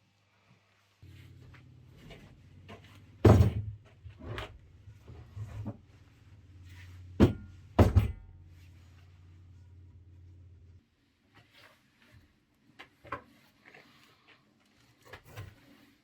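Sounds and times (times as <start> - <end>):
low steady hum: 1.0 - 11.2
sharp knocks and thumps: 2.0 - 5.9, 7.0 - 8.4.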